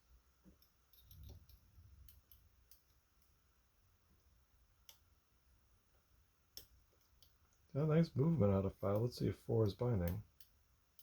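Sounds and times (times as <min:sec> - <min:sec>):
lock picks clicking in a lock: 0:00.6 - 0:02.9.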